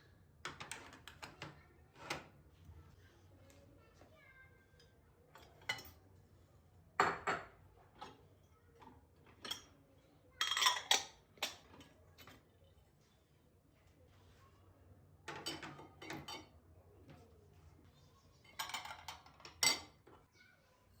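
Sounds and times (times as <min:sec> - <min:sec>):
dishes and cutlery clinking: 0:04.8 - 0:06.0, 0:07.0 - 0:12.5, 0:15.3 - 0:16.6, 0:18.4 - 0:20.2.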